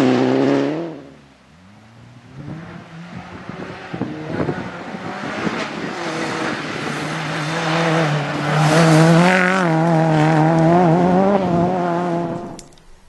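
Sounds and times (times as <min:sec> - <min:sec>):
rally car engine revving past: 0:00.0 - 0:12.6.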